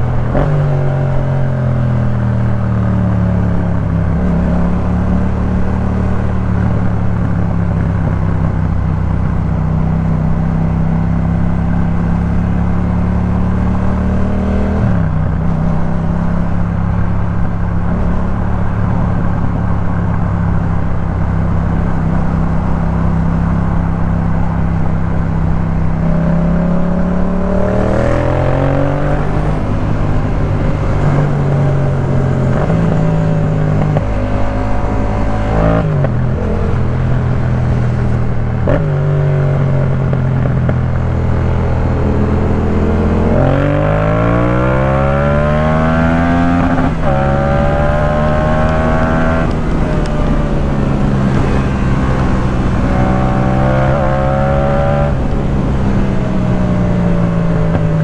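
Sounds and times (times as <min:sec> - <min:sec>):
motorcycle engine revving: 0:00.0 - 0:58.0.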